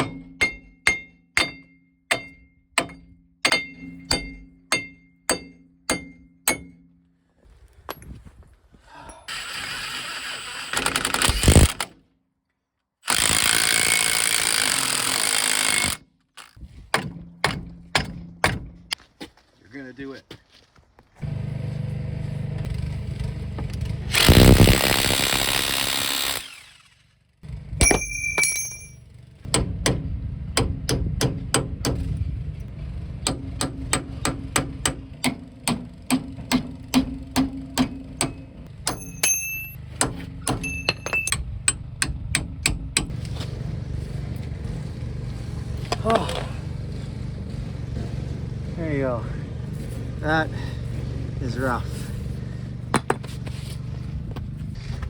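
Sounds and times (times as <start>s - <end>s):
power tool running: 13.0s - 16.0s, 21.2s - 27.2s.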